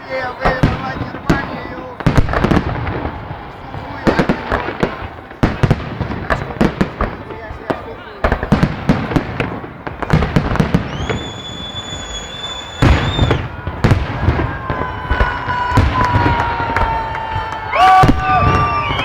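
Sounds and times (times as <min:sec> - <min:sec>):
high steady firework whistle: 0:00.0 - 0:07.3, 0:08.9 - 0:19.0
firework bangs and crackling: 0:00.0 - 0:19.0
falling whistling tone: 0:10.7 - 0:13.6, 0:17.7 - 0:19.0.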